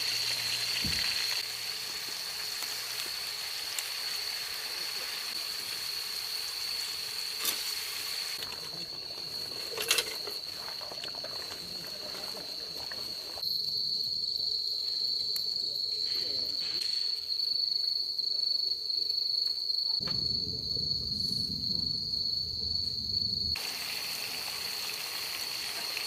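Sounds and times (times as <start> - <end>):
crickets chirring: 0.0 - 26.0
low rumble: 20.0 - 23.6.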